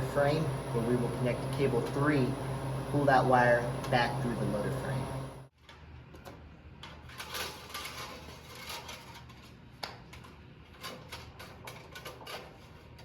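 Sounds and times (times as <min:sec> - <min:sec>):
light clicks and scrapes: 0:06.8 - 0:13.0.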